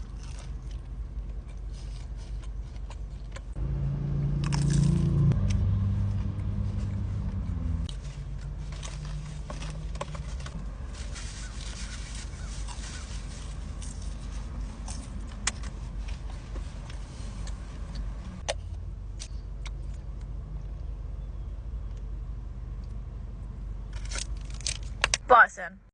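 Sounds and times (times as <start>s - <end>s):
chewing crunches and mouth clicks: 0.0s - 3.6s, 4.4s - 5.6s
low hum: 0.0s - 25.2s
steady low rumble: 0.0s - 25.3s.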